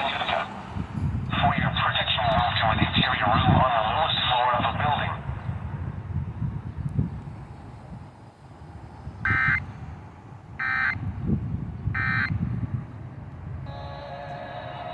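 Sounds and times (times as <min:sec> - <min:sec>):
radio low rumbling noise: 0:00.0 - 0:11.2.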